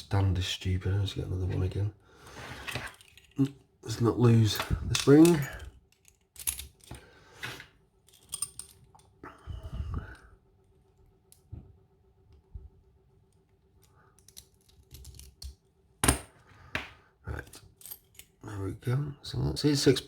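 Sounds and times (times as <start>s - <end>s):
metal lock parts clicking: 2.7s - 3.6s, 4.4s - 7.0s, 8.0s - 9.1s, 14.2s - 16.2s, 17.4s - 18.4s.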